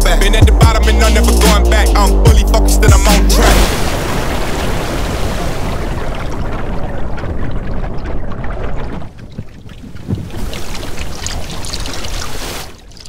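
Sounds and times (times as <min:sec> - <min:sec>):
water rushing and splashing: 0:03.2 - 0:13.0
wind buffeting microphone: 0:03.7 - 0:12.3
crackling spray of water: 0:10.0 - 0:13.0.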